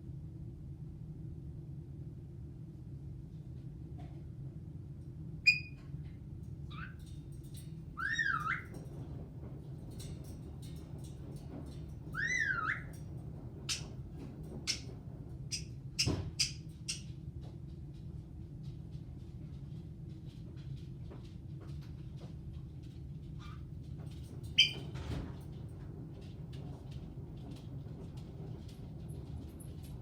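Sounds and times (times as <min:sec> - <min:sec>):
parrot chirping and whistling: 0:05.5 - 0:05.8, 0:08.0 - 0:08.7, 0:12.2 - 0:12.9, 0:24.6 - 0:24.8.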